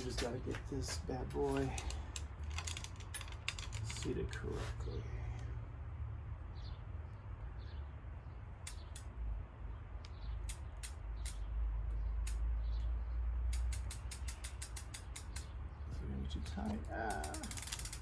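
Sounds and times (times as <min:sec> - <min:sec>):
bicycle chain clicking: 0:01.5 - 0:04.2, 0:13.5 - 0:15.5, 0:16.8 - 0:18.0.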